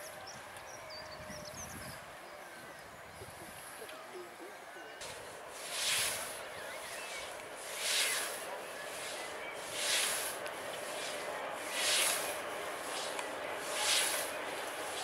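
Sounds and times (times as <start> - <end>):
scythe swishing through grass: 5.0 - 15.0.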